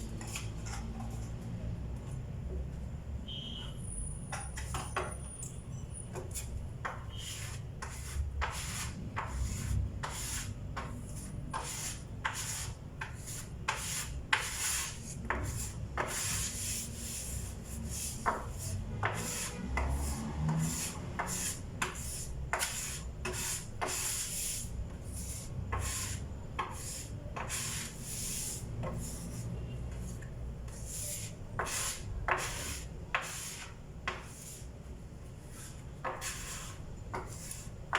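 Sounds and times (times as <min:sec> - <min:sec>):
hand sanding wood: 0:07.3 - 0:29.6, 0:30.7 - 0:34.7, 0:35.5 - 0:37.8.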